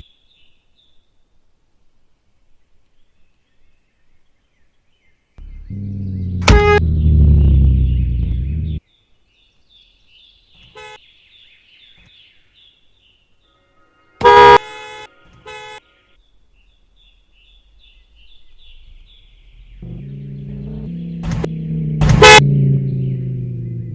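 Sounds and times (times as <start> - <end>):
birds chirping: 2.7 - 23.9
low vehicle rumble: 5.4 - 8.8, 16.9 - 23.9
car horn toots: 6.4 - 7.2, 10.8 - 11.0, 14.1 - 15.9, 19.9 - 22.8.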